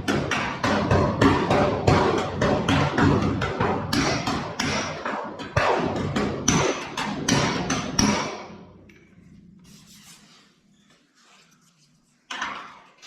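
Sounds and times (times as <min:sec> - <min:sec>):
hammer striking sheet metal: 0:00.0 - 0:08.8
faint rubbing and scuffing: 0:09.6 - 0:12.3.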